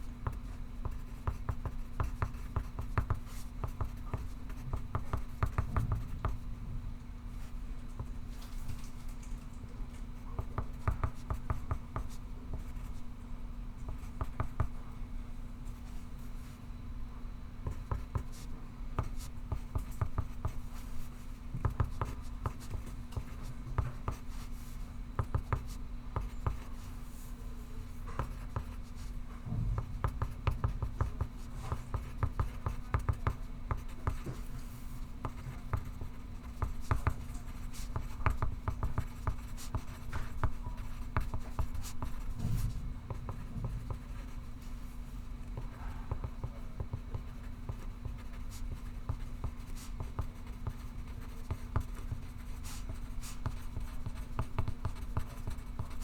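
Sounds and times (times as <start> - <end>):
steady low hum: 0.0 - 56.0
pencil scratching on paper: 10.5 - 13.0, 17.7 - 27.2, 28.0 - 29.2, 29.8 - 44.9, 45.5 - 56.0.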